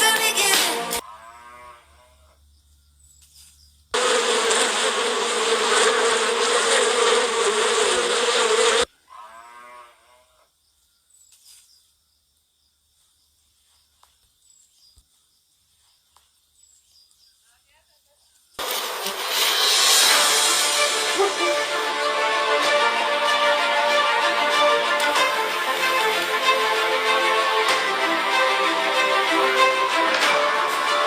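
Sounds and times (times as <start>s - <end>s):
loud steady buzz: 4.0s - 8.9s.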